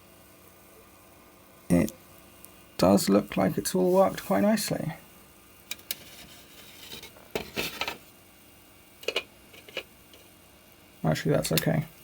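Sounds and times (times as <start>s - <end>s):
small objects clicking and scraping: 5.7s - 8.0s, 9.0s - 10.3s.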